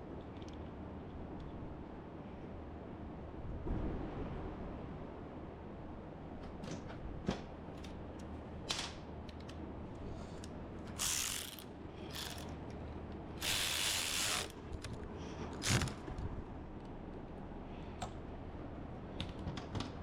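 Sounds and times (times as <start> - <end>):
clicks and knocks of parts: 10.3 - 16.3
short rasping bursts: 11.0 - 12.5, 13.4 - 14.6.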